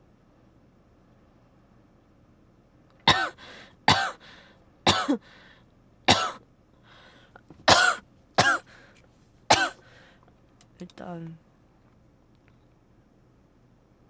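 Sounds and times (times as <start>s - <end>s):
person coughing hard: 3.1s - 4.2s, 4.9s - 5.2s, 6.1s - 6.4s, 7.7s - 8.7s, 9.5s - 9.8s.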